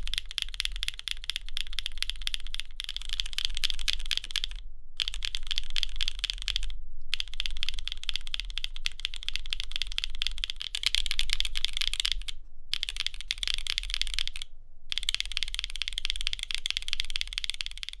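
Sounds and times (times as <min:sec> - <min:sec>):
typing on mechanical keyboard: 0:00.0 - 0:18.0.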